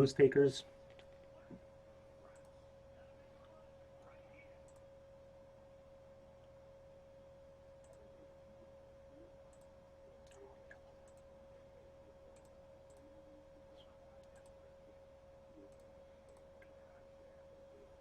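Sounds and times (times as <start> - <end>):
faint steady electrical tone: 0.0 - 18.0
faint clicks: 14.2 - 14.6, 15.7 - 16.8.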